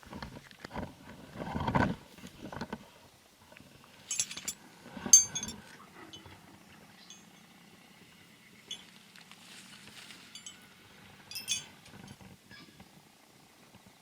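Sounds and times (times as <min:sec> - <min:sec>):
metal tent pegs rustling and knocking: 0:04.0 - 0:06.4, 0:10.2 - 0:10.7, 0:11.3 - 0:12.8
metal pegs clinking: 0:04.1 - 0:06.3, 0:10.3 - 0:10.7, 0:11.3 - 0:12.8.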